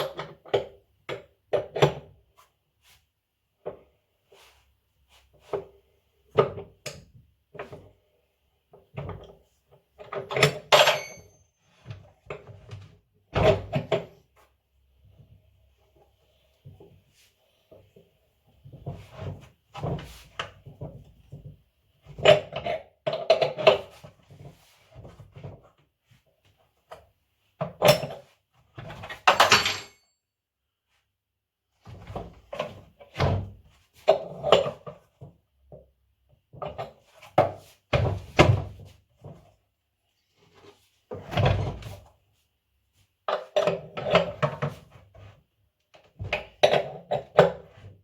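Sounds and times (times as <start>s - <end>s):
metal parts knocking and clattering: 10.3s - 11.4s, 29.2s - 30.1s.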